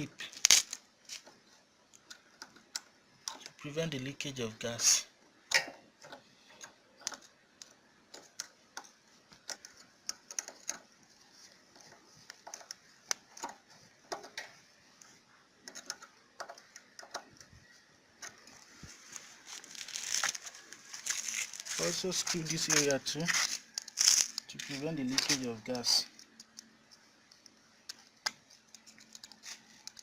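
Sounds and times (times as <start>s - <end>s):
screwdriver clicks and ticks: 5.5s - 10.9s, 15.6s - 17.5s.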